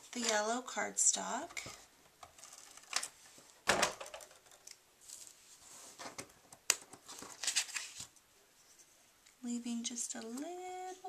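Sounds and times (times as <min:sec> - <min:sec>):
light paper rustling: 0:05.0 - 0:08.9.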